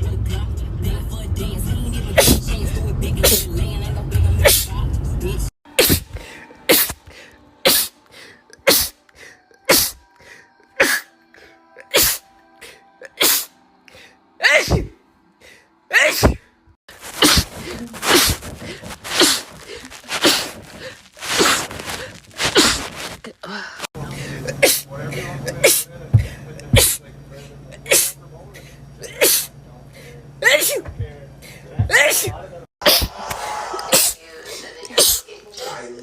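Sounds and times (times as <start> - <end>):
faint background music: 0.1 - 16.5
person sneezing: 2.2 - 2.4, 3.2 - 3.5, 4.4 - 4.8, 5.7 - 8.0, 8.6 - 9.0, 9.6 - 10.0, 10.8 - 11.1, 11.8 - 12.3, 13.0 - 13.5, 14.4 - 15.0, 15.9 - 23.9, 24.5 - 24.9, 25.6 - 25.9, 26.7 - 27.0, 27.8 - 28.2, 29.0 - 29.5, 30.4 - 30.9, 31.8 - 34.2, 34.8 - 35.3.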